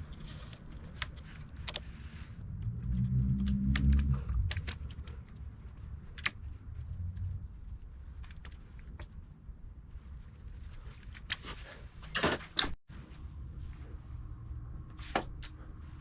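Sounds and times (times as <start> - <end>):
low hum: 2.0 - 8.3.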